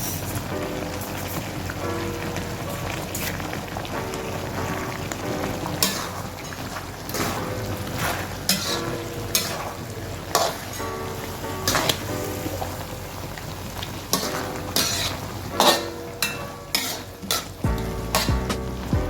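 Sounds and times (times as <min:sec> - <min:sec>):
food sizzling in a pan: 0:00.0 - 0:18.9
spatula scraping a pan: 0:05.8 - 0:11.0, 0:14.1 - 0:18.5.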